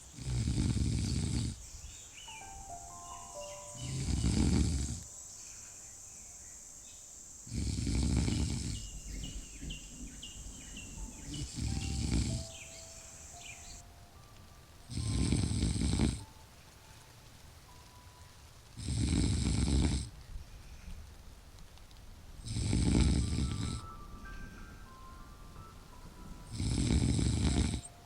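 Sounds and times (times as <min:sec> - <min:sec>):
person snoring deeply: 0:00.1 - 0:01.6, 0:03.8 - 0:05.1, 0:07.5 - 0:09.6, 0:11.2 - 0:12.7, 0:14.9 - 0:16.2, 0:18.8 - 0:20.1, 0:22.4 - 0:23.8, 0:26.5 - 0:27.9.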